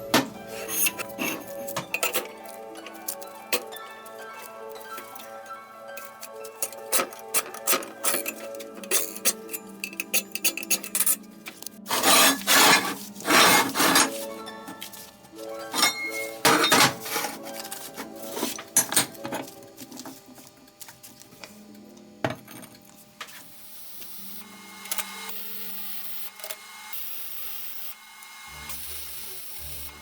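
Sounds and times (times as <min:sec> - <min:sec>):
workshop machine running: 0:00.0 - 0:30.0
sharp knocks and scrapes: 0:11.9 - 0:14.3.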